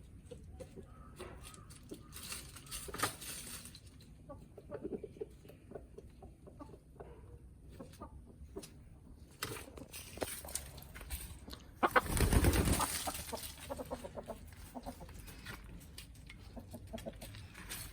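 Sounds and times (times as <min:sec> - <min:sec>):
chickens clucking: 0:03.9 - 0:09.9, 0:11.4 - 0:17.5.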